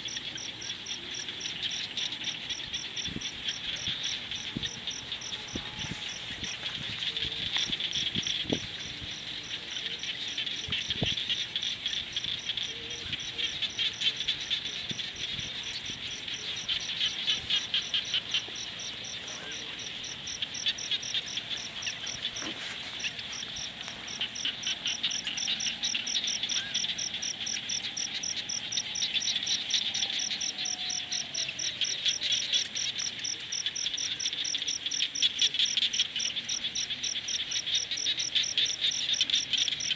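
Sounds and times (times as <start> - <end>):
frogs trilling: 0.0 - 39.9
insects chirping: 0.0 - 39.9
campfire crackling: 14.3 - 25.8.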